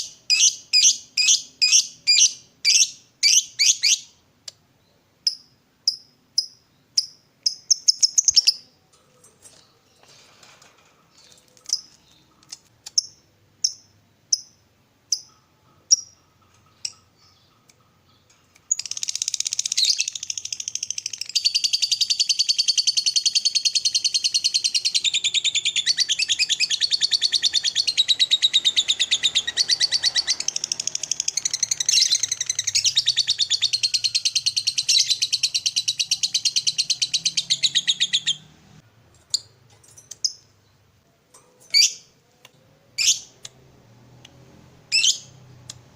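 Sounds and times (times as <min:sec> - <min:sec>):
bird sharp high chirps: 0:00.0 - 0:04.2, 0:05.3 - 0:08.8, 0:12.9 - 0:38.5, 0:41.7 - 0:42.2, 0:43.0 - 0:43.4, 0:44.9 - 0:45.8.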